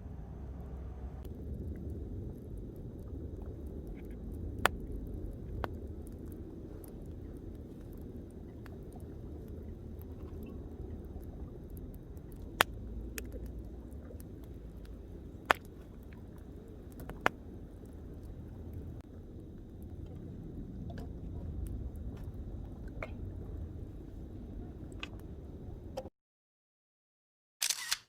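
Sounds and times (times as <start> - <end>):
steady low rumble: 0.0 - 26.1
campfire crackling: 0.4 - 26.0
sharp fire pops: 1.2 - 17.4.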